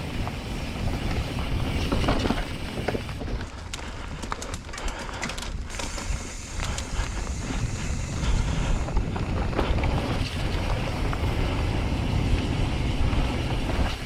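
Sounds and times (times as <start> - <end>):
bike rumbling over dirt: 0.0 - 14.0
wind buffeting microphone: 0.0 - 14.0
sharp clicks and rattles: 1.7 - 11.6.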